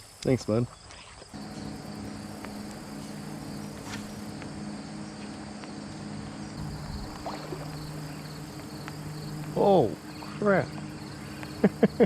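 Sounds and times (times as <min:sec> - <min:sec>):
insect buzzing: 0:00.9 - 0:12.0
low steady hum: 0:01.4 - 0:12.0
faint ticks: 0:07.2 - 0:11.8.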